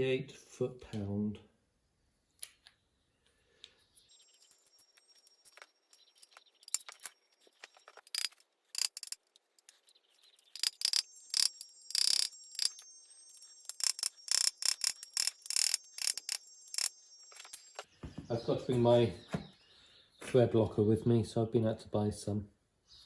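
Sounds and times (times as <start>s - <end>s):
metal tools clinking: 4.2s - 17.9s
socket ratchet clicking: 8.1s - 9.7s, 10.5s - 12.8s, 13.6s - 16.9s.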